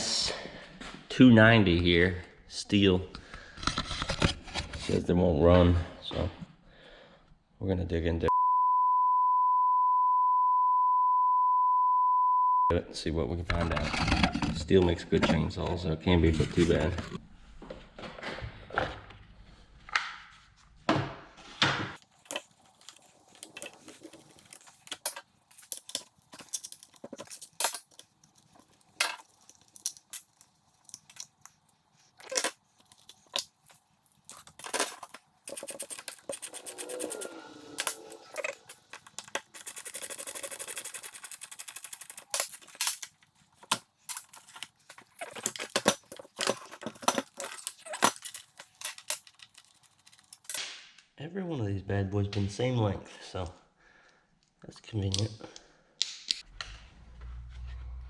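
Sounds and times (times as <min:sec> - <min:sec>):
hand tools clicking and clinking: 0:22.1 - 0:50.6.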